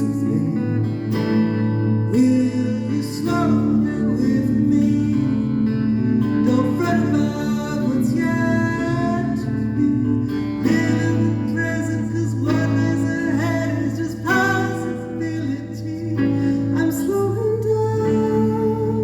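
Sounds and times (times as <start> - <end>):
acoustic guitar playing: 0.0 - 19.0
person singing: 0.0 - 19.0.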